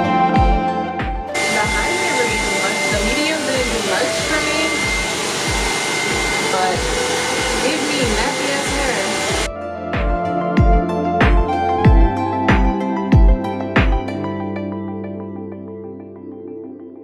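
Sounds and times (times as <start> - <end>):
background music with beat: 0.0 - 8.2, 8.8 - 15.3
blow dryer rushing hiss: 1.3 - 9.5.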